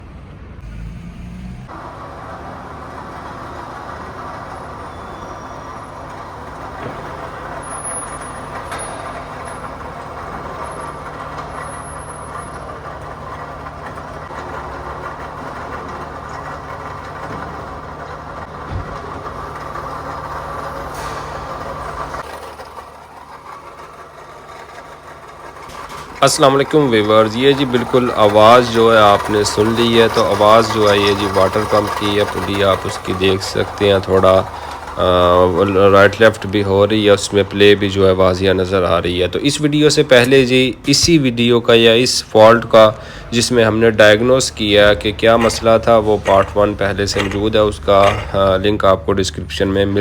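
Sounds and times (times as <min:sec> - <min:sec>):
car engine running: 0:01.6 - 0:50.0
water pump mechanical noise: 0:01.7 - 0:50.0.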